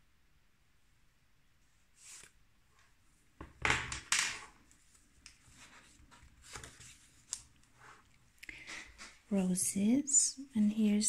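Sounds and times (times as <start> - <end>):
paper pages rustling: 2.0 - 2.4, 4.6 - 9.2.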